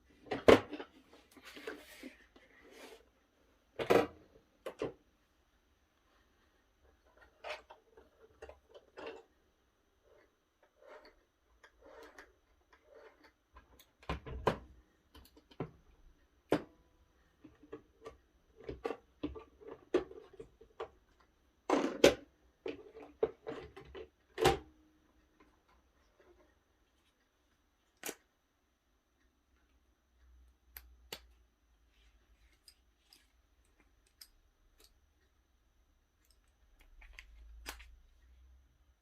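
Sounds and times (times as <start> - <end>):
plastic parts clicking and knocking: 3.7 - 5.1, 6.9 - 9.6, 10.2 - 26.6.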